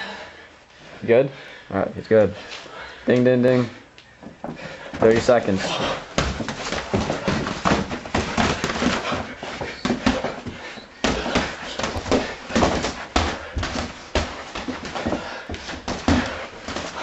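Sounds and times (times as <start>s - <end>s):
scuffling footwork: 2.4s - 17.0s
punches thudding: 4.4s - 17.0s.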